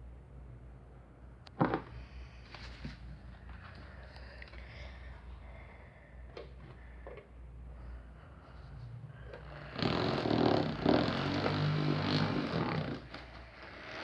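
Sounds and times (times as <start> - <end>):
fan motor humming: 9.2 - 14.0.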